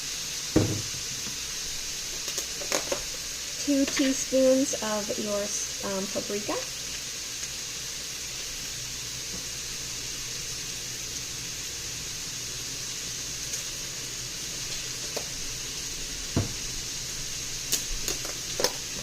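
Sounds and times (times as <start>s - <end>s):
meat and onions sizzling: 0.0s - 19.0s
single knock: 0.6s - 0.9s.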